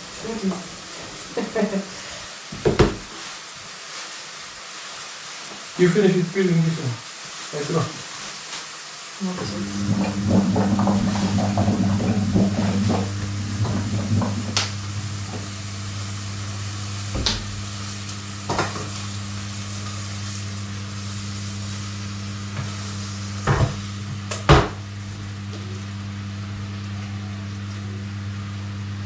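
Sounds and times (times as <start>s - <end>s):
food sizzling in a pan: 0.0s - 26.4s
low hum: 9.4s - 25.8s.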